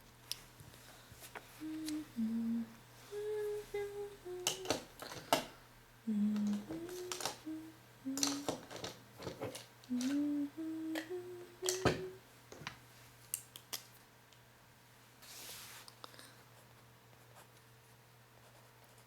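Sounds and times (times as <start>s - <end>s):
person humming a tune: 1.6s - 5.0s, 6.0s - 8.7s, 9.9s - 12.2s.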